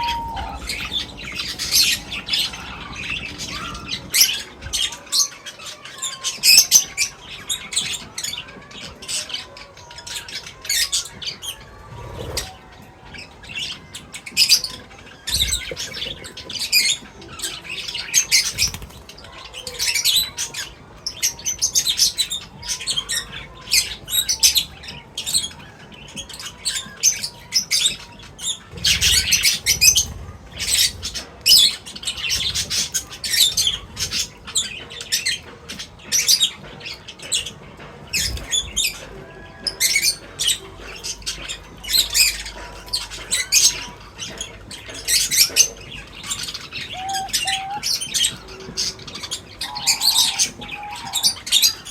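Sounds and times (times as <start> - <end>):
small birds chirping: 0.0 - 51.9.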